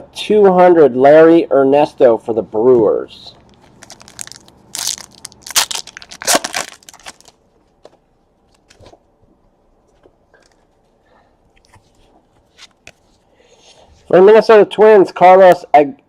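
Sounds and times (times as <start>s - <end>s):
wrapper crinkling and tearing: 3.4s - 7.4s.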